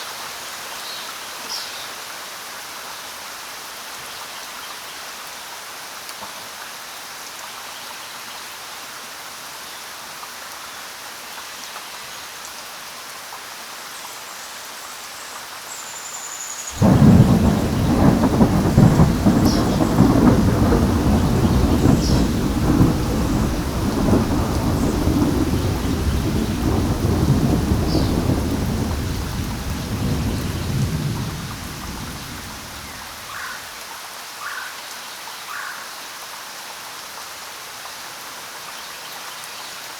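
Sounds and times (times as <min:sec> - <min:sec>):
steady rain falling: 0:00.0 - 0:39.9
thunder clap and rumble: 0:16.8 - 0:33.4.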